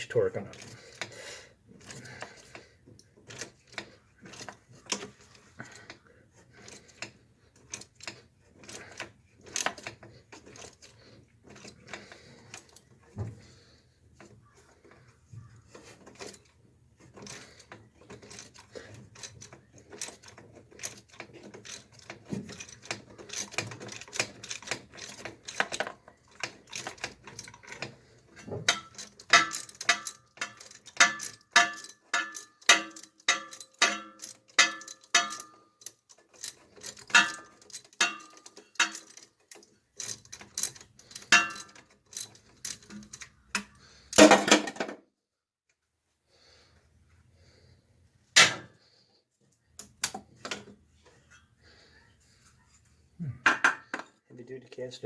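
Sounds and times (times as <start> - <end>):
metallic clunk: 48.4 - 48.8.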